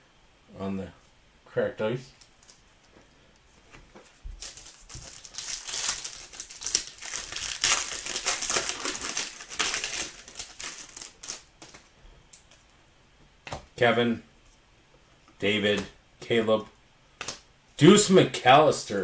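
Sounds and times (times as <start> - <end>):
plastic wrapper tearing and crinkling: 4.3 - 11.9.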